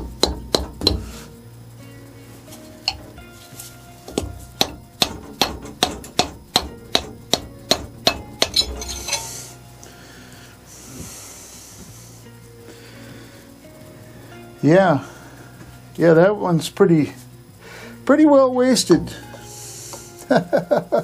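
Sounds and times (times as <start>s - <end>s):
hammer blows on metal: 0.0s - 1.3s, 4.1s - 9.6s.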